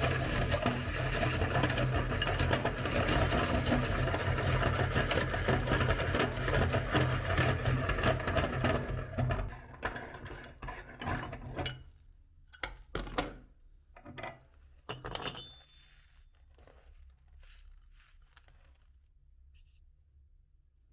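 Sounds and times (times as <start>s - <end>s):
meat grinder crunching candy: 0.0s - 11.0s.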